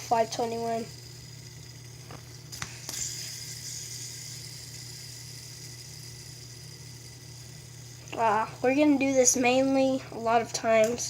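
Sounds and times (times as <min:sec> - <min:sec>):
fidget spinner flick click: 0:00.0 - 0:06.2, 0:10.7 - 0:11.0
fidget spinner whirring: 0:00.0 - 0:11.0
low steady hum: 0:00.0 - 0:11.0.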